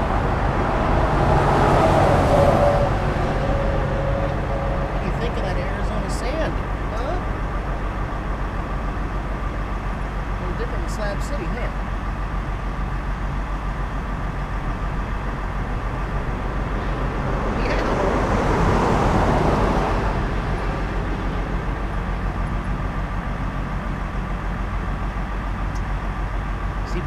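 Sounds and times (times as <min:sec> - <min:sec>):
motor vehicle passing: 0:00.0 - 0:08.7, 0:15.4 - 0:23.5.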